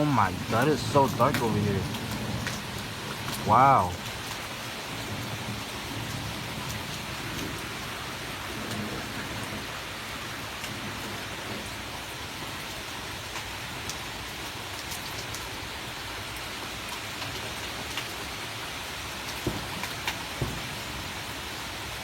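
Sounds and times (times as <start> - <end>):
sharp raindrop hits: 0.0 - 15.6, 19.0 - 21.0
heavy rain falling: 0.0 - 22.0.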